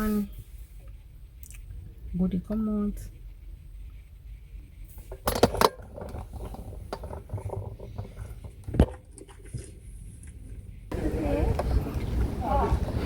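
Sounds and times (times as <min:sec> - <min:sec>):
people moving clicks and rustling: 0:09.2 - 0:13.0.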